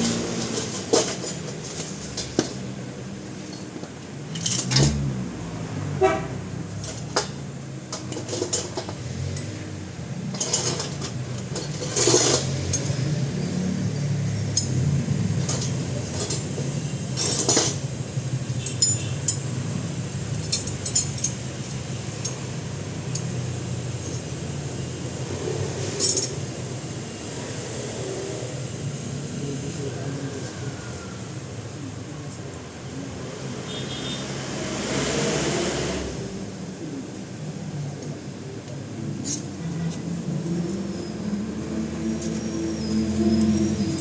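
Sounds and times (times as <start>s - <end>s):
metal tools clinking on steel: 0.1s - 2.7s, 3.4s - 5.1s, 6.7s - 9.6s, 10.2s - 26.7s, 28.8s - 29.4s, 39.2s - 44.0s.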